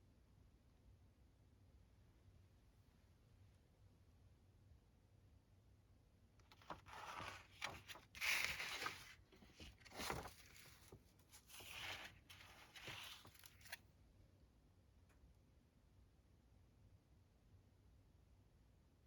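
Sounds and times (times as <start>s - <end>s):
paper pages rustling: 6.5s - 13.8s.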